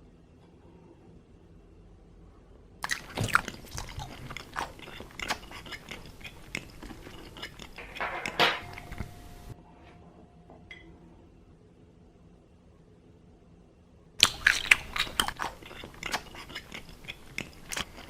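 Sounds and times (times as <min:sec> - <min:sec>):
crunchy biting and wet chewing: 0:02.8 - 0:09.6, 0:14.2 - 0:18.0.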